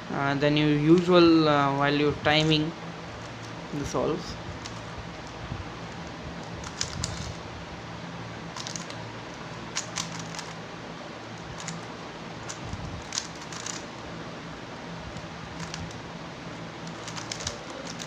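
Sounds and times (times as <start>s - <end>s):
low steady hum: 0.0s - 18.0s
puzzle cube clicking: 6.4s - 7.4s, 8.6s - 9.0s, 9.7s - 10.6s, 11.4s - 13.9s, 15.2s - 16.0s, 16.8s - 18.0s.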